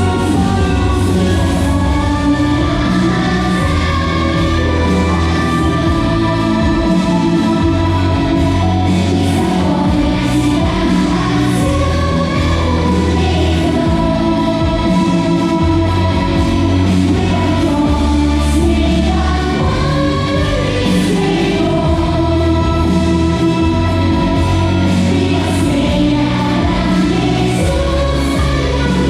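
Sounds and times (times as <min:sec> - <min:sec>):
long held bass notes: 0:00.0 - 0:29.0
music with singing: 0:00.0 - 0:29.0.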